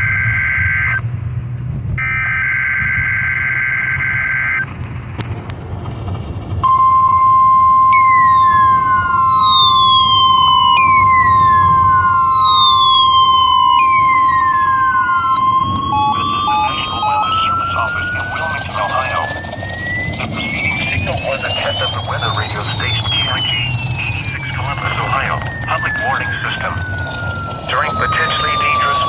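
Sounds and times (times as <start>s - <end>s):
steady warning alarm tone: 0.0s - 1.0s, 2.0s - 4.7s, 6.6s - 29.0s
falling siren-like sweeps: 0.0s - 1.1s, 2.0s - 4.7s, 6.6s - 29.0s
rising tone: 6.5s - 29.0s
data burst of high pitches: 6.6s - 29.0s.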